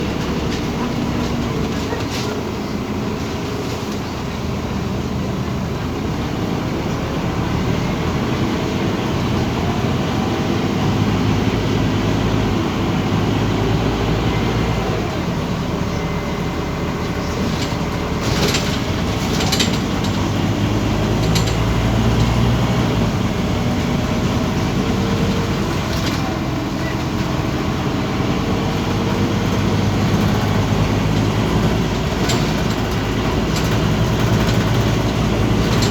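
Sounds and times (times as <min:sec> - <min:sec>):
bus diesel engine: 0:00.0 - 0:35.9
road noise: 0:00.0 - 0:35.9.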